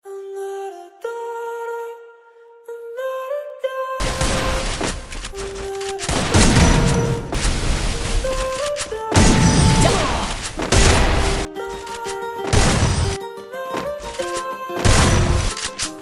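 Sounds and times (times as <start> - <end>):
background music with held notes: 8.0 - 16.0.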